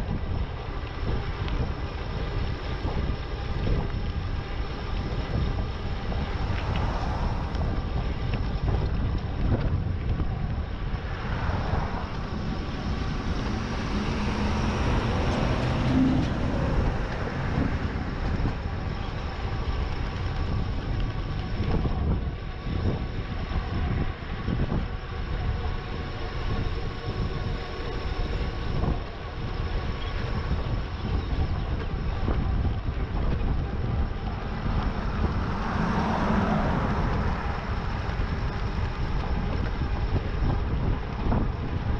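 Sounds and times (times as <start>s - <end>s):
road rumble: 0.0s - 41.9s
wind rushing over microphone: 0.0s - 41.9s
vehicle passing: 5.1s - 31.5s, 32.2s - 41.7s.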